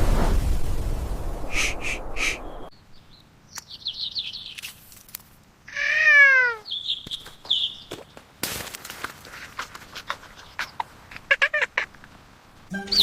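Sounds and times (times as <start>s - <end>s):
high trill: 12.7s - 13.0s
rapid high chirps: 12.7s - 13.0s.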